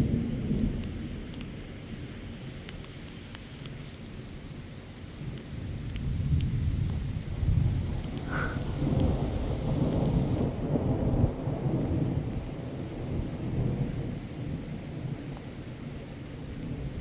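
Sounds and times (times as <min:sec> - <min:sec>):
rain falling: 0:00.0 - 0:17.0
thunder rumbling: 0:05.1 - 0:17.0.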